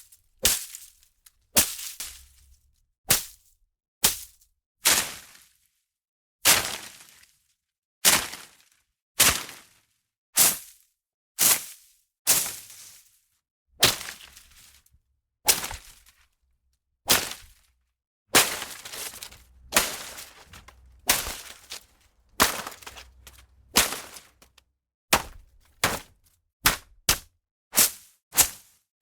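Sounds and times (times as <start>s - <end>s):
swishing hits on plants: 13.8s - 14.8s, 15.5s - 16.1s, 17.1s - 17.6s, 18.3s - 28.7s
leaves rustling: 18.3s - 24.5s.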